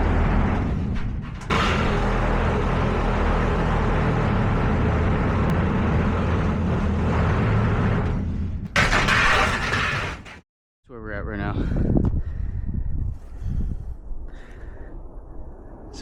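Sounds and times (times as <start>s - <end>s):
engine running with low rumble: 0.0s - 9.0s.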